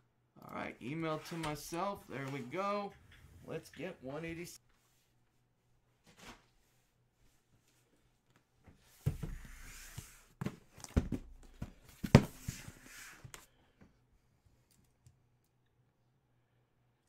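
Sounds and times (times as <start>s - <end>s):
handling knocks and thumps: 10.4s - 12.7s.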